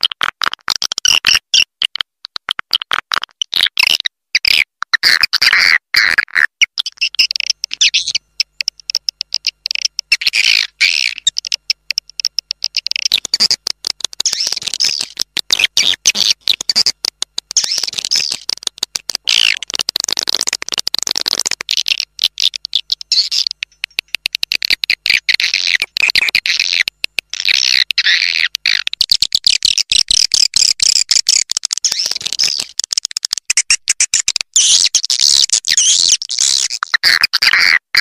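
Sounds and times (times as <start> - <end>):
swiftlets twittering: 6.8 - 32.8
rapid clicks: 7.0 - 36.8.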